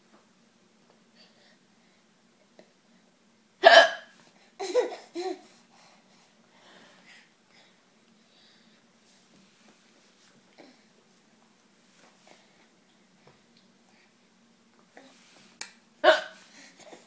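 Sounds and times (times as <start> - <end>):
person hiccuping: 3.6 - 4.1, 16.0 - 16.4.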